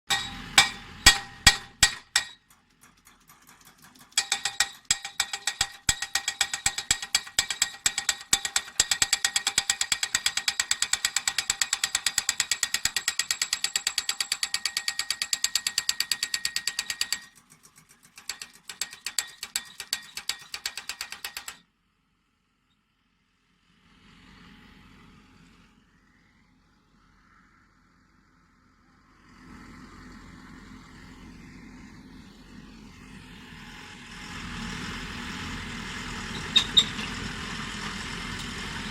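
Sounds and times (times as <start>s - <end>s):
pile driver hammering steel: 0.1s - 21.6s, 36.3s - 37.3s.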